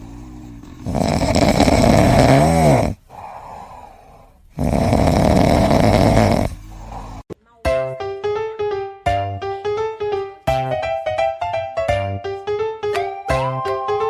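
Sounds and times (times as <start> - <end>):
pet snoring: 0.0 - 7.3.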